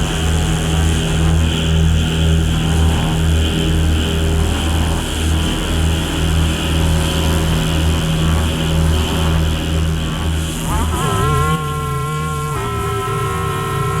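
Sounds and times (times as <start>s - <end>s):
steady low hum: 0.0s - 14.0s
throbbing low pulse: 0.0s - 14.0s
drone music: 9.1s - 14.0s.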